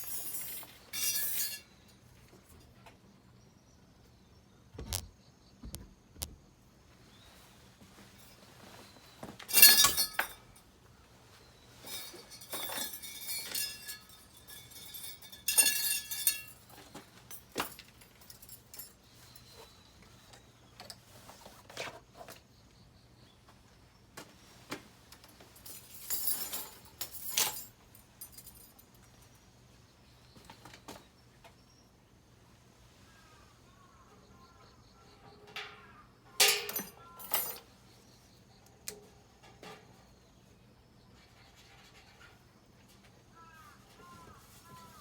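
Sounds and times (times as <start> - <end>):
metal parts clinking and rattling: 0.0 - 1.9, 9.4 - 10.7, 11.8 - 19.6, 25.1 - 29.0, 35.4 - 37.9.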